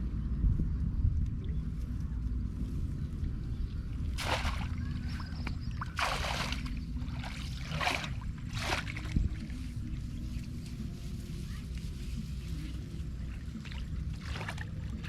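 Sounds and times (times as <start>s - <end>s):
low rumble: 0.0s - 15.0s
water splashing and sloshing: 3.9s - 15.0s.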